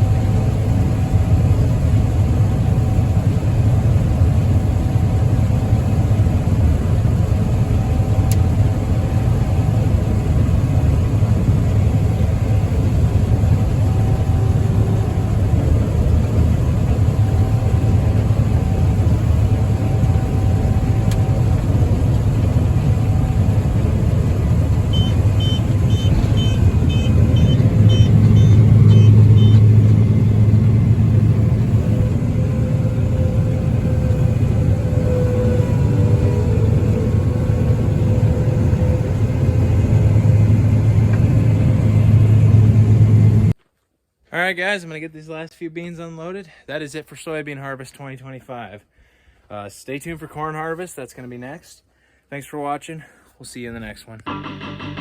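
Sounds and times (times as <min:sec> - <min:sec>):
combine harvester rumbling: 0:00.0 - 0:43.6
high electronic beeps: 0:24.9 - 0:29.7.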